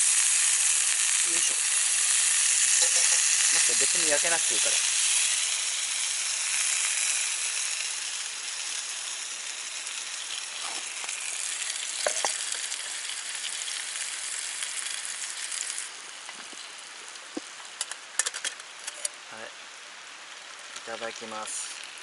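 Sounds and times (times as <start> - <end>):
sausages sizzling: 0.0 - 22.0.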